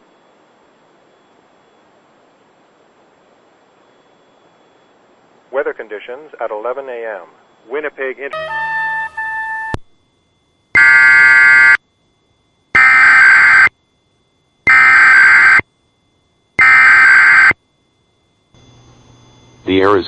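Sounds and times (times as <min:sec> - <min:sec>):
steady tone: 0:07.7 - 0:11.8, 0:12.4 - 0:13.7, 0:14.4 - 0:19.9
buzzing data bursts: 0:10.8 - 0:11.8, 0:12.7 - 0:13.7, 0:14.6 - 0:15.6, 0:16.6 - 0:17.6.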